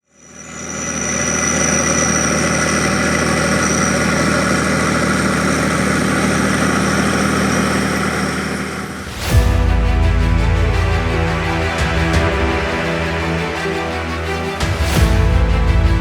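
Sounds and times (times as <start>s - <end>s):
tractor diesel engine running: 0.4s - 9.0s.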